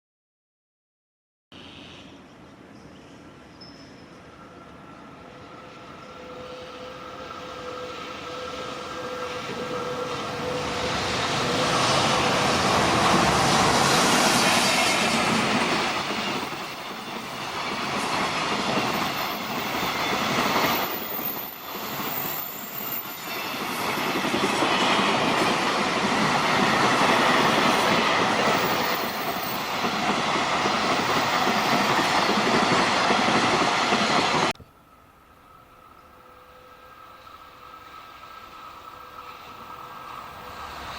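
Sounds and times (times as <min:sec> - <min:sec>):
freight train running: 0:01.7 - 0:40.9.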